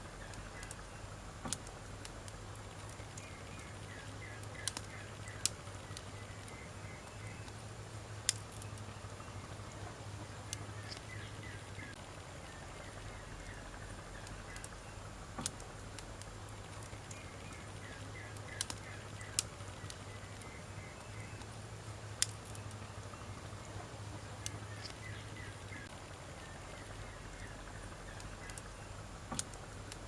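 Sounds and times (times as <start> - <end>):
campfire crackling: 0.0 - 30.0
wood popping in fire: 0.0 - 30.0.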